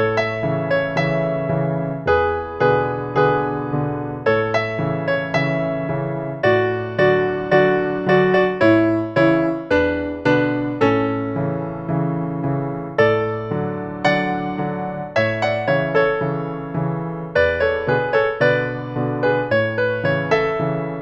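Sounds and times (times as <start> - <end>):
piano playing: 0.0 - 21.0.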